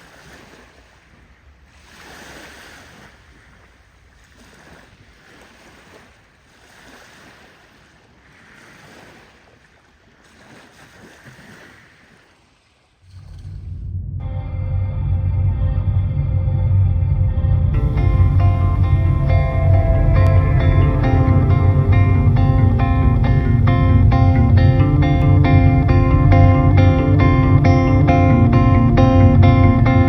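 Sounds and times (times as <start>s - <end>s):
small waves washing on beach: 0.0s - 13.6s
music with deep low tone: 13.5s - 30.0s.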